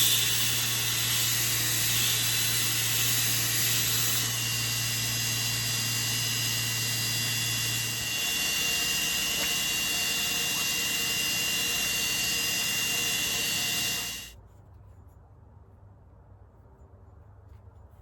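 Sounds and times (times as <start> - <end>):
loud rushing machine noise: 0.0 - 14.3.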